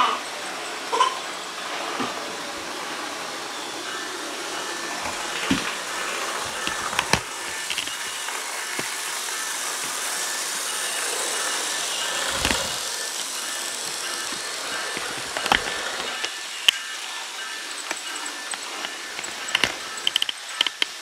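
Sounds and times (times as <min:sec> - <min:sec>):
model train whirring on track: 0:00.0 - 0:21.0
sharp clicks: 0:17.8 - 0:21.0.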